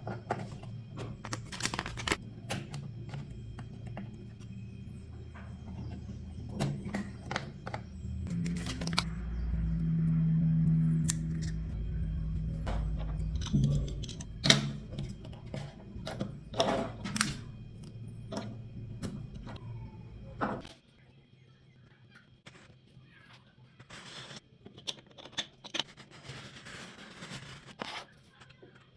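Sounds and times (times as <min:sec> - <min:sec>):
plastic toy and packaging handled: 0:00.0 - 0:04.4, 0:05.5 - 0:09.1
low steady hum: 0:00.0 - 0:20.7.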